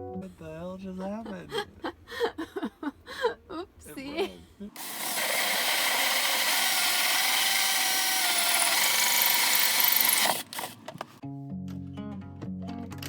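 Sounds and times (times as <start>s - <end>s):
power tool running: 4.8s - 11.1s.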